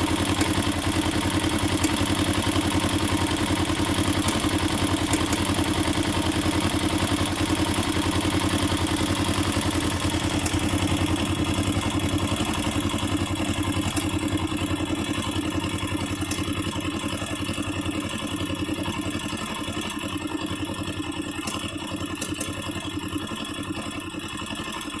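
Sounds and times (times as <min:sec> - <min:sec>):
motorcycle engine idling with clatter: 0:00.0 - 0:25.0.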